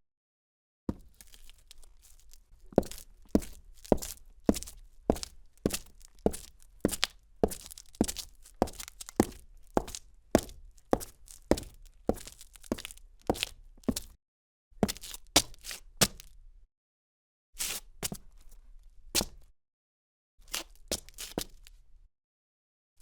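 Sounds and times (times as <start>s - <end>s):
footsteps on gritty cement: 0.9s - 14.2s, 14.8s - 16.3s, 20.5s - 21.7s.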